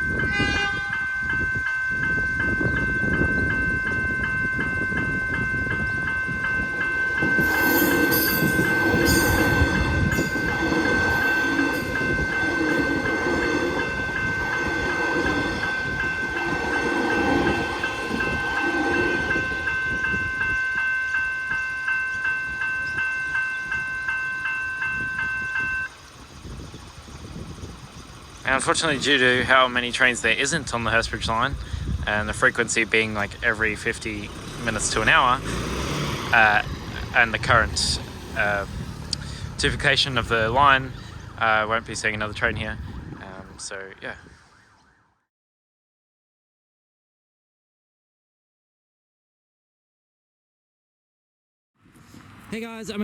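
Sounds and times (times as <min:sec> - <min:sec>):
level crossing bells ringing: 0:00.0 - 0:26.4, 0:28.0 - 0:31.5, 0:32.1 - 0:42.6
electric train passing: 0:00.0 - 0:44.0, 0:51.8 - 0:53.0.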